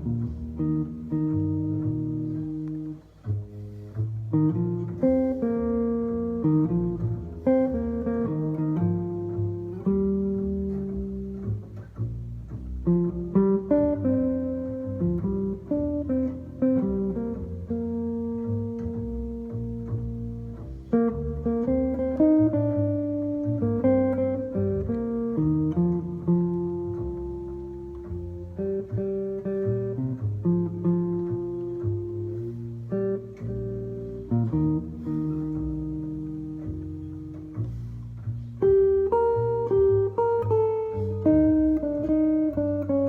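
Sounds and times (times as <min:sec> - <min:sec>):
solo guitar playing chords: 0:00.0 - 0:43.0.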